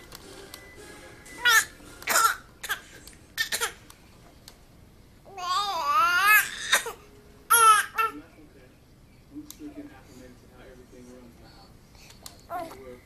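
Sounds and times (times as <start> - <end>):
baby fake coughing: 1.5 - 3.8, 6.2 - 8.2
baby babbling: 5.3 - 8.2.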